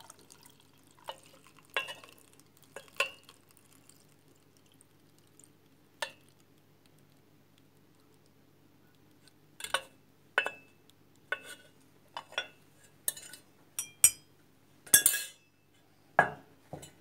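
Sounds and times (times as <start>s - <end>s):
utensils and crockery clinking: 12.2s - 14.3s, 14.9s - 15.5s.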